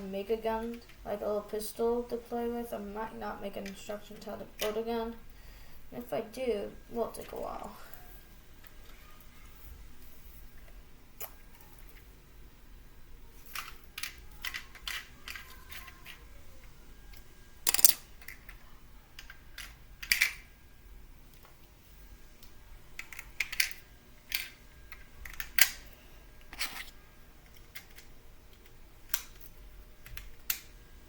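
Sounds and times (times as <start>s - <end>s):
plastic pieces clicking: 13.5s - 16.2s, 17.1s - 18.6s, 19.2s - 20.4s, 22.4s - 25.8s, 26.4s - 30.7s.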